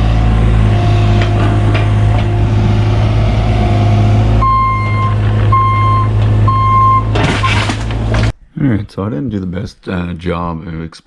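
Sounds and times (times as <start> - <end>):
excavator diesel engine running: 0.0 - 8.3
travel alarm beeping: 4.4 - 7.1.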